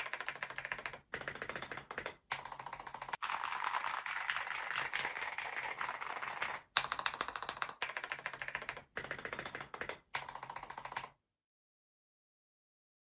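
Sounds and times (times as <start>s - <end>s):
fast typing on mechanical keyboard: 0.0s - 11.1s.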